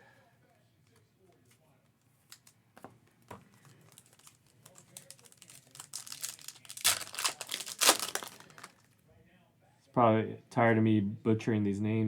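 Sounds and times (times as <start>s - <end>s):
foil wrapper crinkling and tearing: 3.5s - 8.9s.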